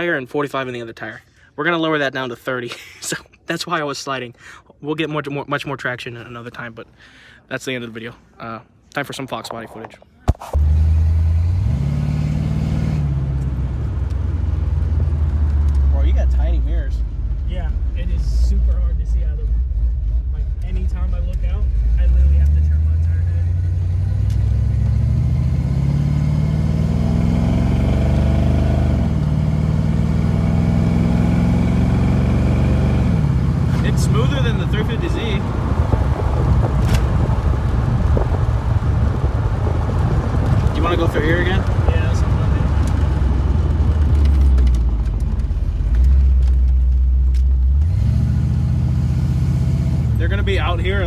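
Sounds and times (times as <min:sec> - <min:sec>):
car engine accelerating: 0:10.4 - 0:51.0.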